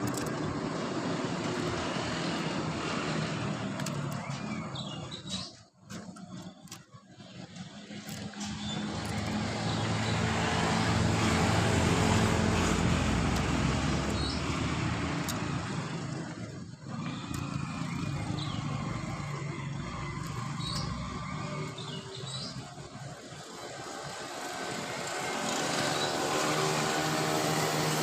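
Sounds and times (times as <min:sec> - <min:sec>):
motor vehicle passing by: 0:00.0 - 0:06.4, 0:07.2 - 0:28.0
steady engine sound: 0:05.9 - 0:28.0.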